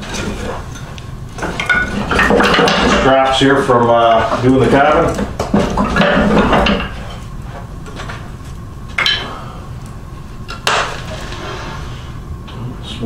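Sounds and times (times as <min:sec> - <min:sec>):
wood knocking on metal firebox: 0:01.4 - 0:07.2.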